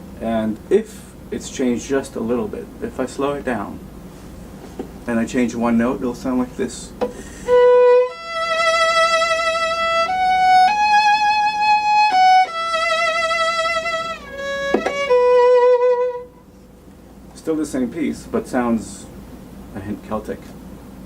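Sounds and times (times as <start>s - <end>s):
solo violin melody: 7.4s - 16.4s.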